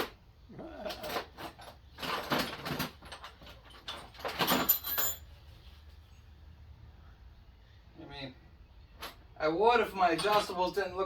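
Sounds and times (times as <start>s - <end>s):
metal hand tools clattering: 10.1s - 10.9s.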